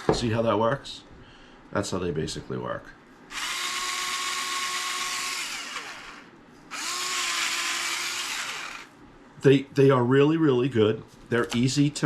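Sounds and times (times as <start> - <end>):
electric spice grinder whirring: 3.3 - 8.9.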